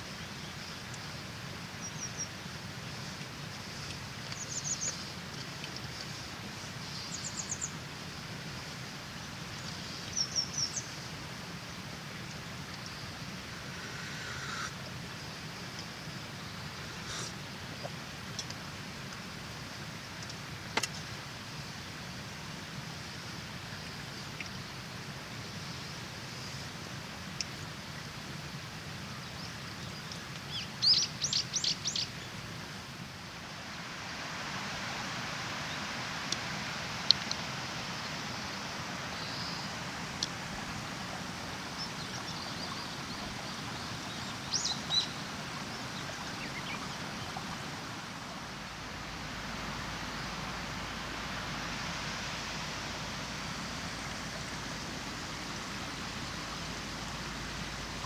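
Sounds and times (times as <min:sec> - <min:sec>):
steady background hiss: 0:00.0 - 0:58.0
river water rushing: 0:32.4 - 0:58.0
small birds chirping: 0:39.1 - 0:49.1.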